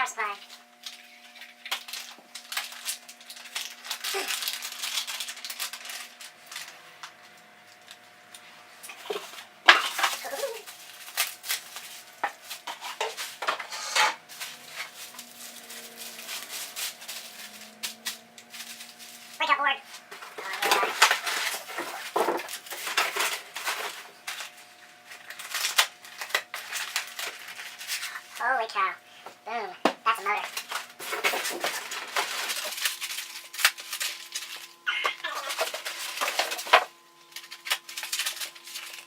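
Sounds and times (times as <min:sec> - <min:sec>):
faint steady hum: 0:00.0 - 0:39.0
packaging rustling: 0:00.8 - 0:08.0, 0:08.9 - 0:28.4, 0:30.4 - 0:39.0
objects clattering and knocking: 0:08.9 - 0:28.1, 0:29.9 - 0:39.0.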